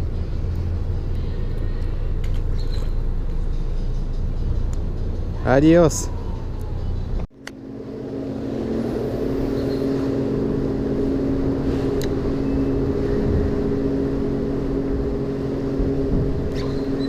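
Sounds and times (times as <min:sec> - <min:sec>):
engine droning: 0:00.0 - 0:17.0.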